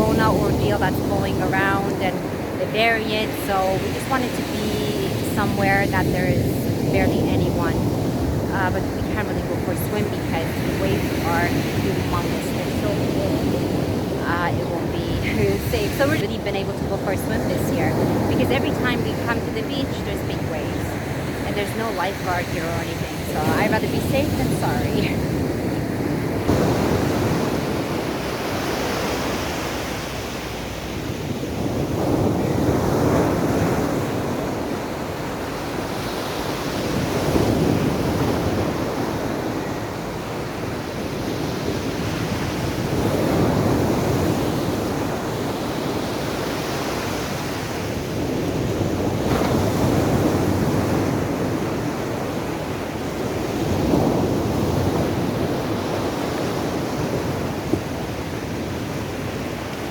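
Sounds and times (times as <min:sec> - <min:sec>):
sea waves breaking: 0:00.0 - 0:59.9
wind buffeting microphone: 0:00.0 - 0:59.9.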